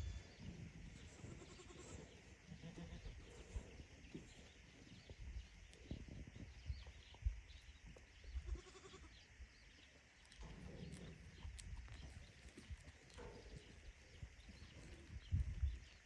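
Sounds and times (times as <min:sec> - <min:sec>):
goats bleating: 0:01.2 - 0:02.0.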